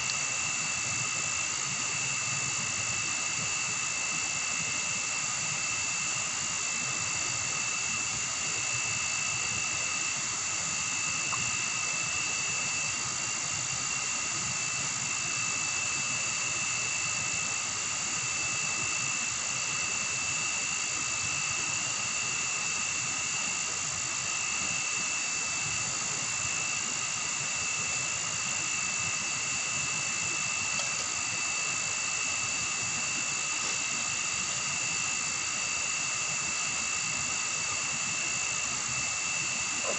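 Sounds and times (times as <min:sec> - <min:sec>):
forest insects droning: 0:00.0 - 0:39.9.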